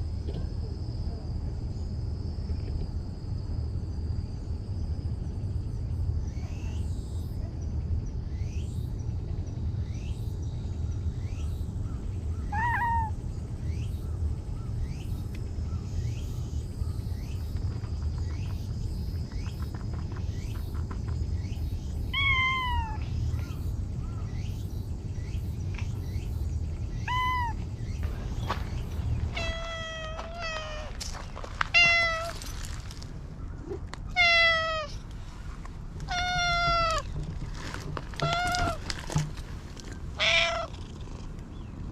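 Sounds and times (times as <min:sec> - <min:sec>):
cats meowing: 0:12.5 - 0:13.2, 0:22.1 - 0:23.1, 0:27.0 - 0:27.6, 0:29.3 - 0:32.7, 0:33.6 - 0:35.0, 0:36.0 - 0:37.2, 0:38.1 - 0:39.2, 0:40.1 - 0:41.1
low rumble: 0:23.1 - 0:34.2.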